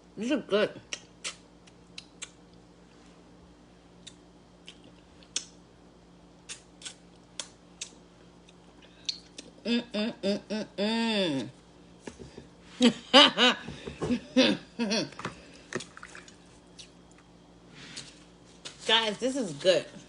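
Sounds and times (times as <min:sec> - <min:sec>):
mouth smacks while eating: 0:00.9 - 0:02.4, 0:04.0 - 0:05.6, 0:06.4 - 0:09.6, 0:16.7 - 0:17.3
person humming: 0:09.6 - 0:11.6.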